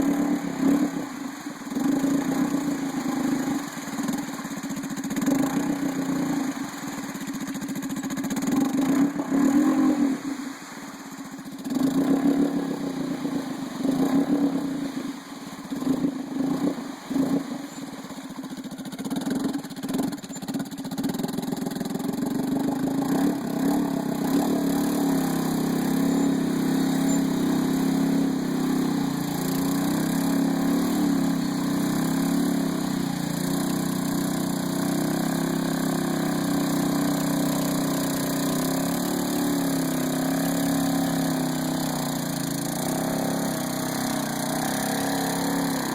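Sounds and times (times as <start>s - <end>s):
engine revving: 0.0s - 10.4s, 11.5s - 45.9s.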